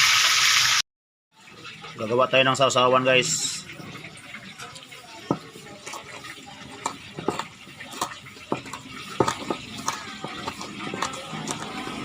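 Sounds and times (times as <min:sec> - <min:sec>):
fish frying in oil: 0:00.0 - 0:00.8, 0:01.4 - 0:12.0
kitchen utensils clinking: 0:03.6 - 0:12.0.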